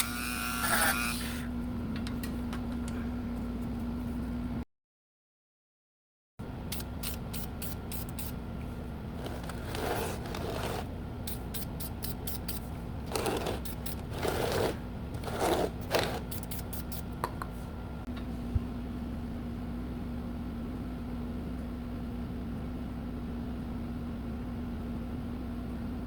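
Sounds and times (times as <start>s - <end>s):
wooden pieces scraping: 9.2s - 10.9s, 13.1s - 16.3s.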